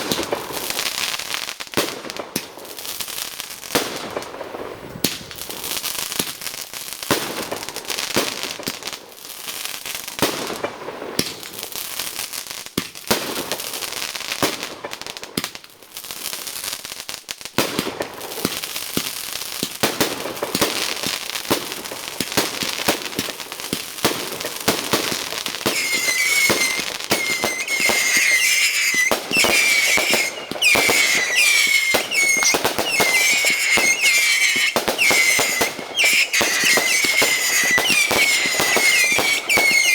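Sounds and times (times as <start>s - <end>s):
fireworks crackling and popping: 16.2s - 39.9s
whistling fireworks: 22.3s - 39.9s.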